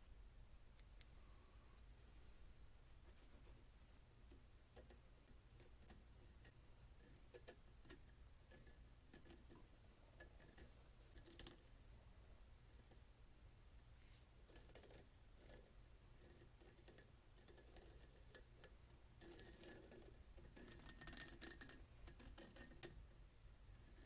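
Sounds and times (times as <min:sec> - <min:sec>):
low room hum: 0:00.0 - 0:24.0
faint small clicks and taps: 0:00.7 - 0:01.2, 0:04.3 - 0:06.6.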